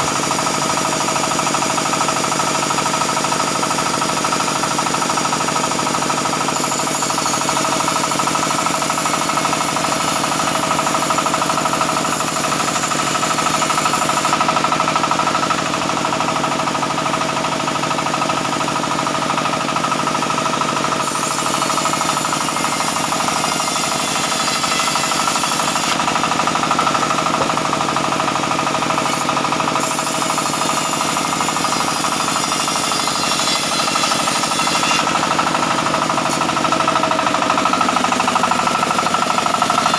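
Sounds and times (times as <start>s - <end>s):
band saw machinery running: 0.0s - 39.9s.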